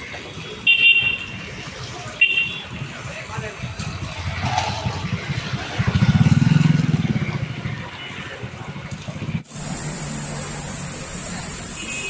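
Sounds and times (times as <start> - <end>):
vehicle engine passing by: 3.2 - 11.8.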